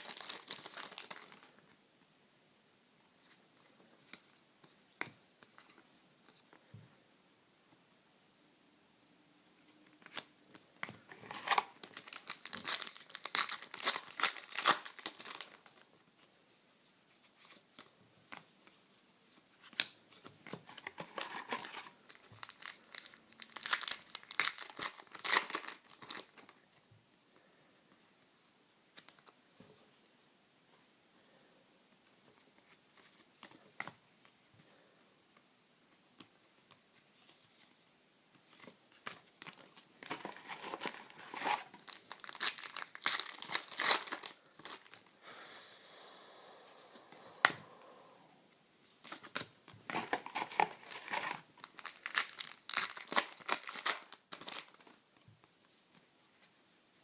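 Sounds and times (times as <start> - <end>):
wrappers tearing and crinkling: 0.0 - 1.5, 11.1 - 15.7, 20.9 - 26.4, 40.0 - 45.0, 49.9 - 55.0
cards clicking and rustling: 10.0 - 15.7, 49.0 - 55.0.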